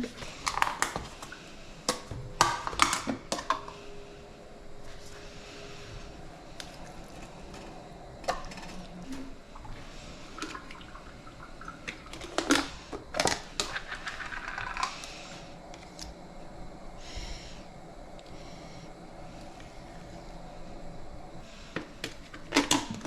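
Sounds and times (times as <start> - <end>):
kitchen knocks and clatters: 1.9 - 3.8.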